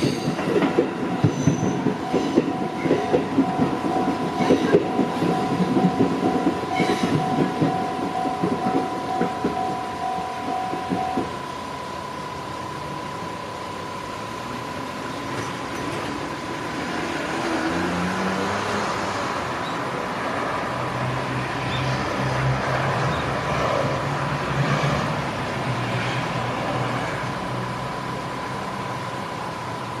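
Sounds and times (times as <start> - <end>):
steady high tone: 1.0 - 16.7
vehicle passing by: 17.1 - 19.3.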